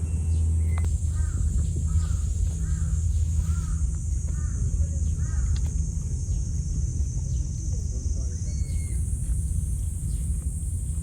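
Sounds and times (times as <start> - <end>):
crow cawing: 1.1 - 3.8, 5.2 - 5.6.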